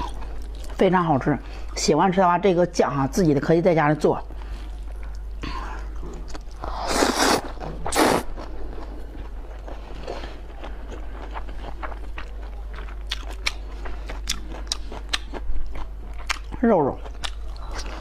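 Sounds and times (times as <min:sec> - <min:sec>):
steady low hum: 0:00.0 - 0:18.0
woman chewing crunchy food: 0:04.4 - 0:18.0
breath rush or slurping: 0:06.6 - 0:08.3.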